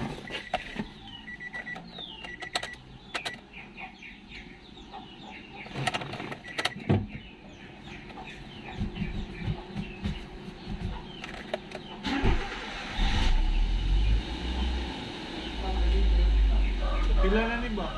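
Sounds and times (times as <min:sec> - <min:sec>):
beeping: 0:00.0 - 0:03.5, 0:05.8 - 0:07.1
small birds chirping: 0:00.0 - 0:12.4, 0:13.0 - 0:17.9.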